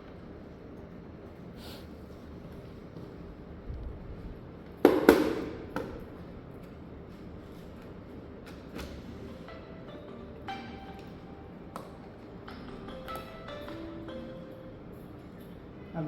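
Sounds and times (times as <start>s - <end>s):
phone ringtone: 9.2s - 15.3s.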